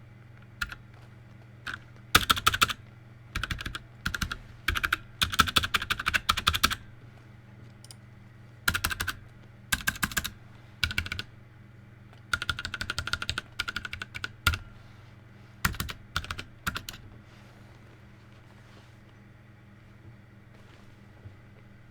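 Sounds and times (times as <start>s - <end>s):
mechanical keyboard typing: 0.6s - 0.8s, 1.7s - 2.8s, 3.4s - 6.8s, 8.7s - 11.3s, 12.3s - 14.7s, 15.7s - 17.0s.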